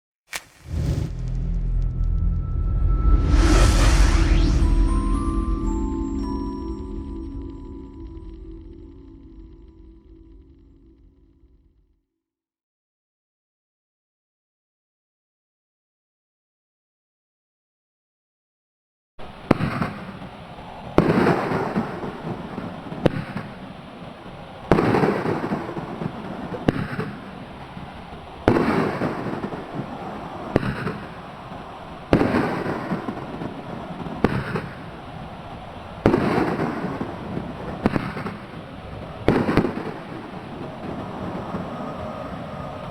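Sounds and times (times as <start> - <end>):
firework boom with hiss: 0.3 - 7.2, 35.9 - 42.9
firework reports: 0.3 - 7.8, 19.2 - 42.9.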